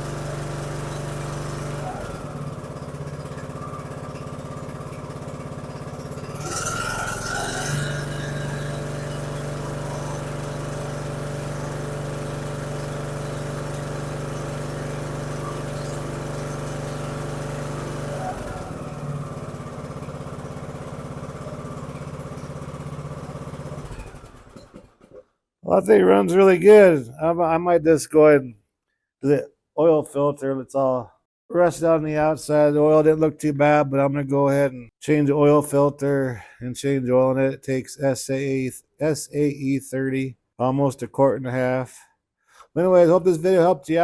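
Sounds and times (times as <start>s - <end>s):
riding mower engine running: 0.0s - 27.0s.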